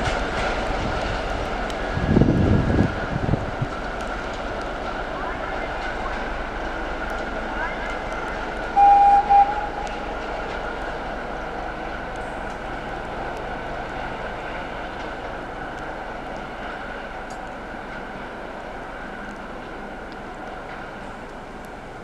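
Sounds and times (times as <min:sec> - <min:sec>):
diesel locomotive engine drone: 0:00.0 - 0:22.0
locomotive horn toot: 0:08.8 - 0:09.9.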